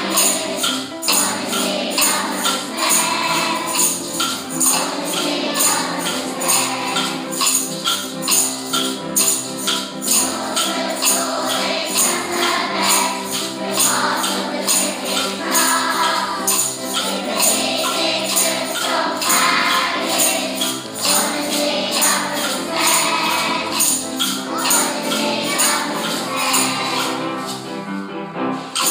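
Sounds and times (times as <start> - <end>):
steady tambourine beat: 0.0 - 28.9
upbeat music: 9.8 - 27.4.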